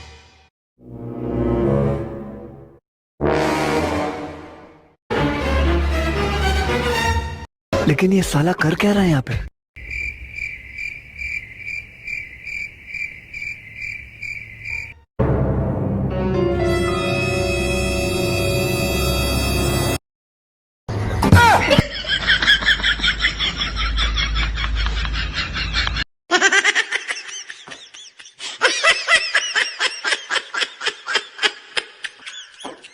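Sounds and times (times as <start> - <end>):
cricket chirping: 9.8 - 15.0
eerie music: 15.2 - 20.0
high-pitched laughter: 21.5 - 32.9.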